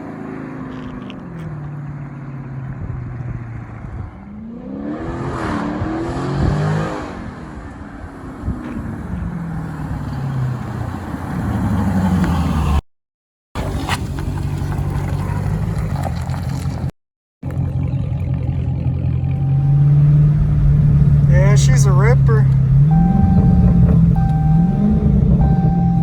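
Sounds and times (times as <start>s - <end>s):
car engine accelerating: 0.0s - 12.8s, 13.6s - 26.0s.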